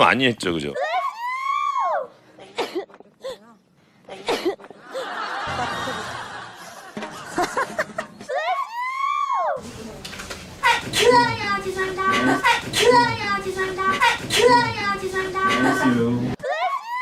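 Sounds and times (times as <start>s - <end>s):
people laughing: 4.7s - 8.4s.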